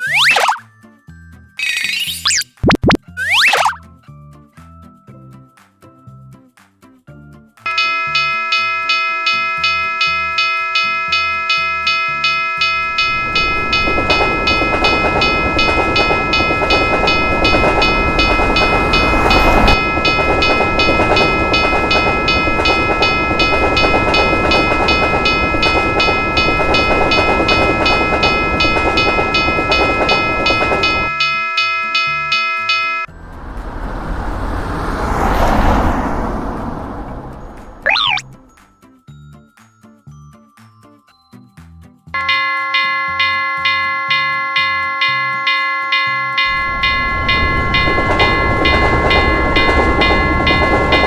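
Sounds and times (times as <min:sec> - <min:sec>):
level-crossing bell ringing: 0:07.7 - 0:33.3, 0:37.3 - 0:38.6, 0:42.2 - 0:51.0
passing train rumble: 0:07.7 - 0:38.5, 0:42.2 - 0:51.0.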